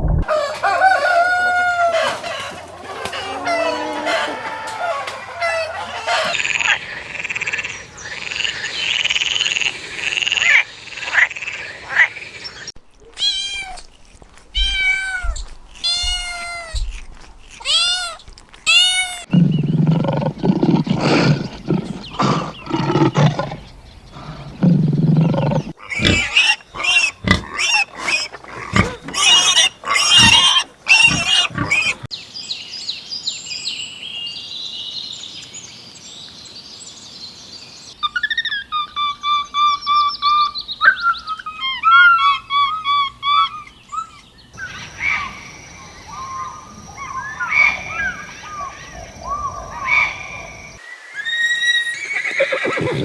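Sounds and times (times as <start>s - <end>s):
rising and falling animal calls: 17.6s - 32.1s, 38.0s - 53.0s
low rough animal call: 19.2s - 32.1s, 51.9s - 53.0s.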